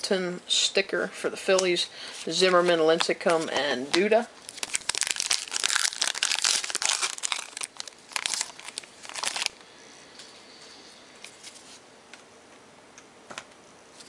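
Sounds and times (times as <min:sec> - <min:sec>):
wrapper crinkling and tearing: 0:04.4 - 0:09.6.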